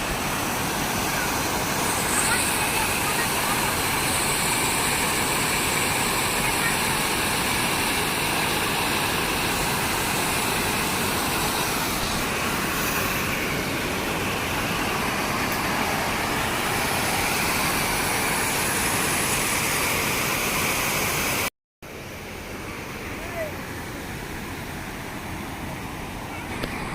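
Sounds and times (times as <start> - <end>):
floodwater rushing over dam: 0.0 - 26.9.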